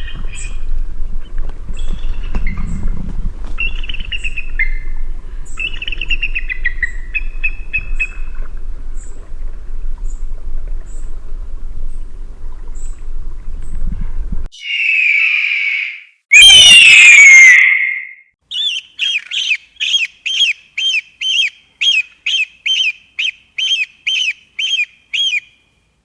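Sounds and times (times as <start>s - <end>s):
harsh scream: 14.5s - 18.2s
eagle chattering calls: 14.6s - 16.0s, 16.8s - 25.5s.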